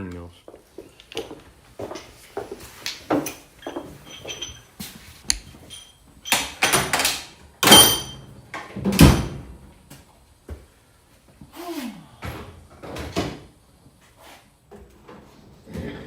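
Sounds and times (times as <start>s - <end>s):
metal tools clinking: 3.2s - 8.2s.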